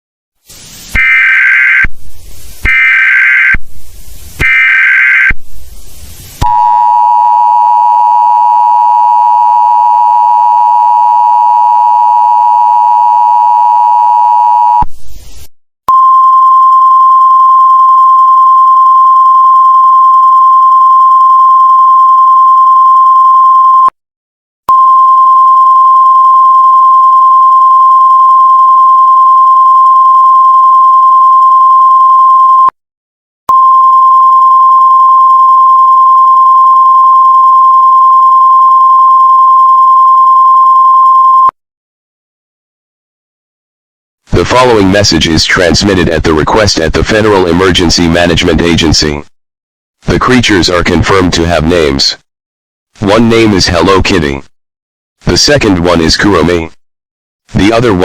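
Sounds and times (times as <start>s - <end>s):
screeching digital header bursts: 1.0s - 1.9s, 2.6s - 3.6s, 4.4s - 5.4s
steady attention tone: 6.4s - 14.8s
high beep tone: 15.9s - 24.0s, 24.7s - 32.8s, 33.5s - 41.6s.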